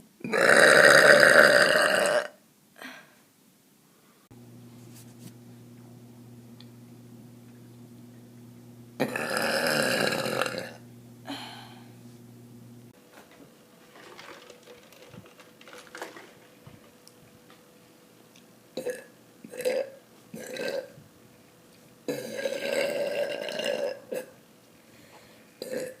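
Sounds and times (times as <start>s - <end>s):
woman burping: 0.2s - 3.0s, 9.0s - 11.9s, 18.8s - 21.0s, 22.1s - 24.4s, 25.6s - 26.0s.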